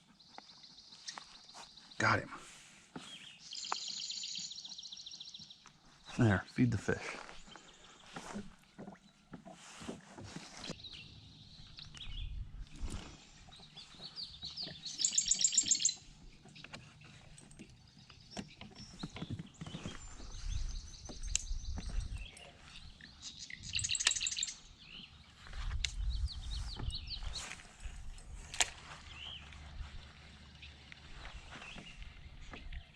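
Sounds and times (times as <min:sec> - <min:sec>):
songbird trilling: 0:13.6 - 0:16.1, 0:19.7 - 0:25.2.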